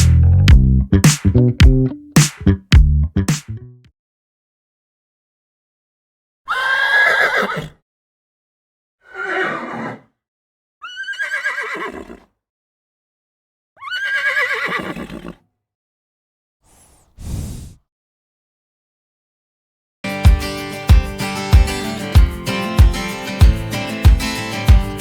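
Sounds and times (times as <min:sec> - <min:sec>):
horse whinnying: 0:06.5 - 0:07.8, 0:09.1 - 0:10.0, 0:10.8 - 0:12.3, 0:13.8 - 0:15.4.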